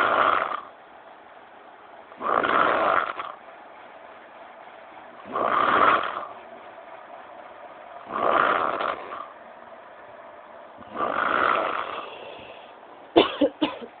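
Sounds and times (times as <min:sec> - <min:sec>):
person snoring: 0:02.2 - 0:03.4, 0:05.2 - 0:06.4, 0:08.1 - 0:09.3, 0:10.8 - 0:12.8
quiet breathing: 0:04.4 - 0:13.0.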